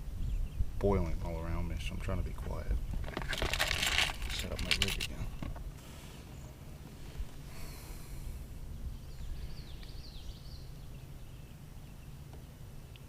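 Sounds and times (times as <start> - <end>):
wind rumble on microphone: 0.0 - 5.8, 7.0 - 12.0.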